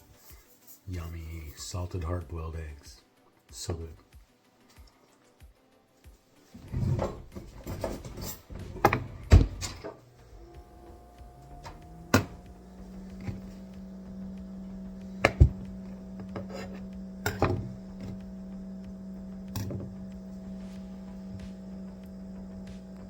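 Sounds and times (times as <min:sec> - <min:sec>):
electric motor humming: 0:06.6 - 0:23.0
kitchen items knocking and clicking: 0:06.7 - 0:10.0, 0:15.1 - 0:18.3.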